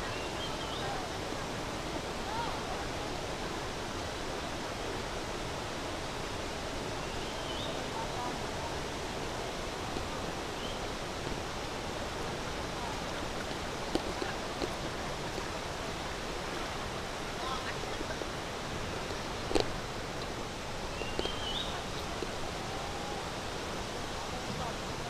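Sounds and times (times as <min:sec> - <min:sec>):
waterfall rushing: 0:00.0 - 0:25.0.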